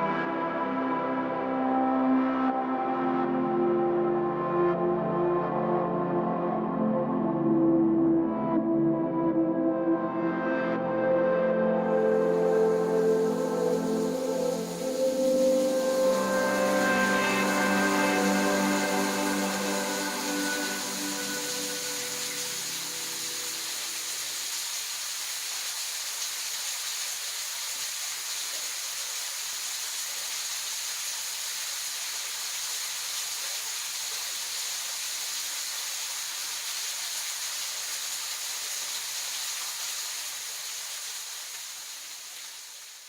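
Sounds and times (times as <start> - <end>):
steady high hiss: 11.7 - 43.0.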